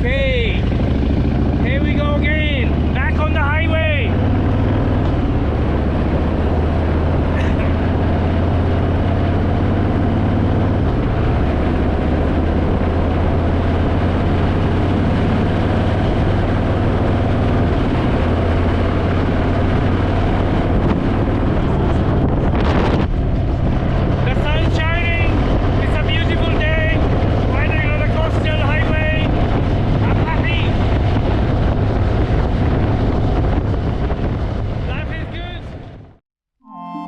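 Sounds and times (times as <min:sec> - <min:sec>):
motorcycle engine cruising: 0:00.0 - 0:36.2
wind rushing over microphone: 0:00.0 - 0:36.2.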